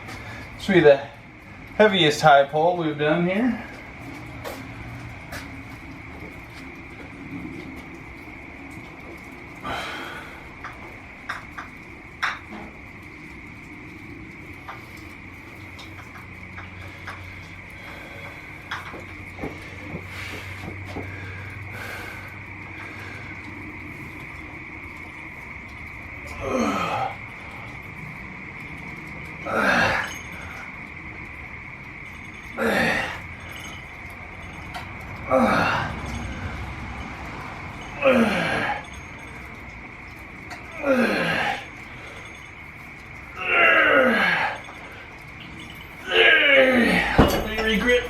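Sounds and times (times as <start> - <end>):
breathy hisses: 9.6 - 10.6, 16.8 - 18.8, 19.6 - 24.2, 26.2 - 28.1, 28.8 - 30.8, 32.2 - 34.6, 35.2 - 36.8
cable machine knocking and clicking: 46.9 - 48.0.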